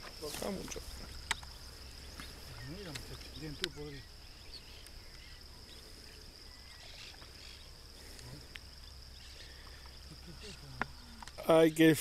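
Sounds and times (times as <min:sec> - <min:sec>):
faint clicks: 0:00.6 - 0:03.8, 0:04.8 - 0:05.3, 0:08.1 - 0:08.7.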